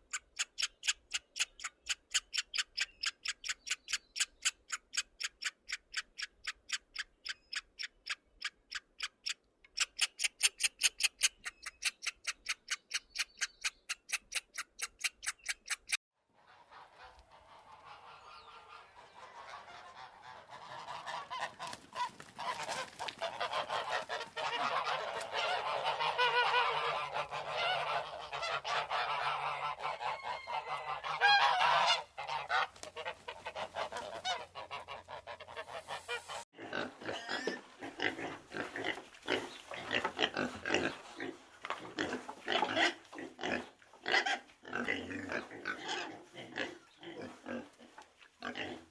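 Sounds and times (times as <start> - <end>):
flock of birds calling: 17.1 - 36.4.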